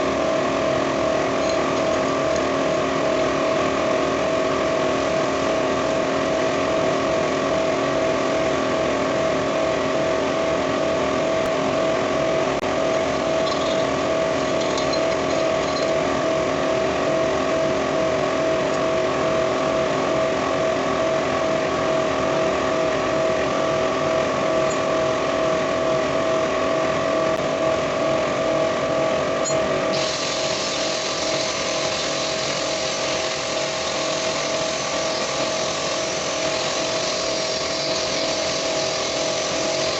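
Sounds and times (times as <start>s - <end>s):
machine motor humming: 0.0s - 28.5s, 29.3s - 39.9s
hiss: 29.9s - 39.9s.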